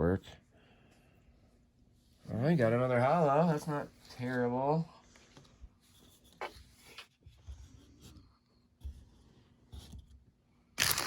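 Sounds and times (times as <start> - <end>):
trading cards rustling: 10.8 - 11.0.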